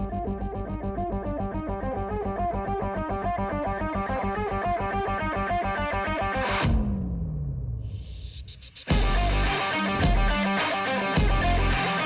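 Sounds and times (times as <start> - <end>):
music with pulsing beat: 8.0 - 12.0.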